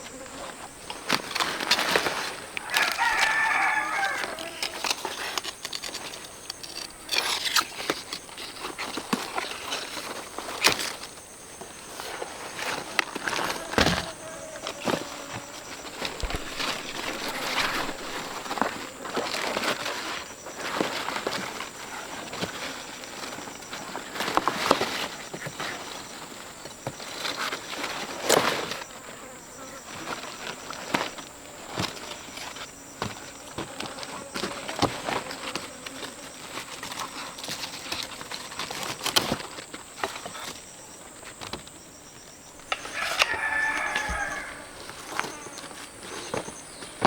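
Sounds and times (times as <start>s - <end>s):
high insect drone: 0.0s - 47.0s
handling rustles and clicks: 0.5s - 28.9s.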